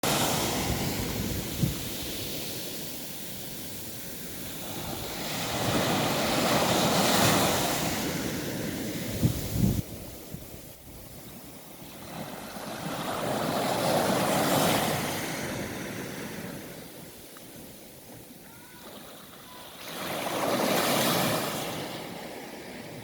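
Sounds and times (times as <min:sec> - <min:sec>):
wind buffeting microphone: 0:00.0 - 0:03.0, 0:03.6 - 0:16.7
sea waves washing ashore: 0:00.0 - 0:23.0.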